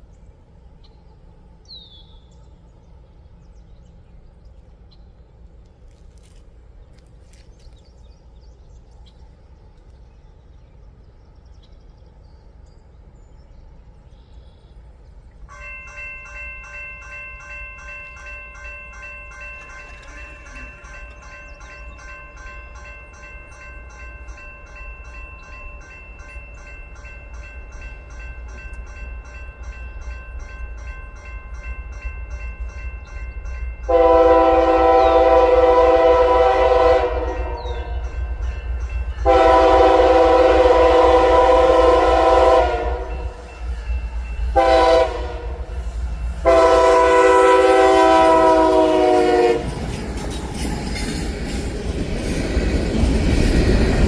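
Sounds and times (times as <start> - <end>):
train wheels rumbling: 14.8 - 54.0
bell ringing: 15.5 - 34.1
locomotive air horn: 33.9 - 38.1, 39.2 - 43.4, 44.6 - 45.8, 46.4 - 49.8.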